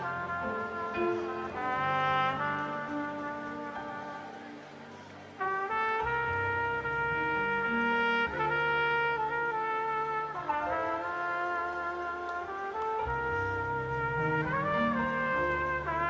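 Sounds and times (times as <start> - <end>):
keyboard accompaniment: 0.0 - 16.0
trumpet playing long notes: 0.0 - 16.0
bass: 5.4 - 16.0.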